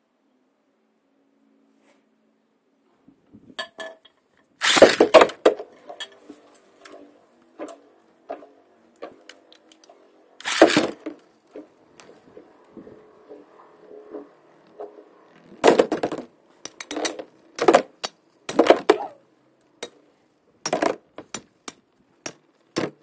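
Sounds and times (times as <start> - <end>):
spinning tops whirring: 4.6 - 5.3, 10.4 - 11.0.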